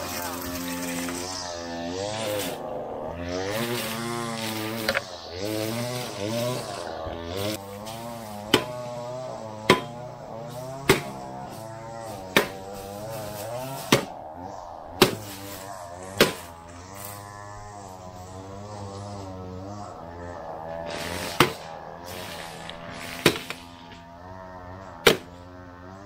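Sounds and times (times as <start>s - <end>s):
background music with droning voice: 0.0s - 26.0s
hard blows smashing lawn mower: 9.6s - 14.1s.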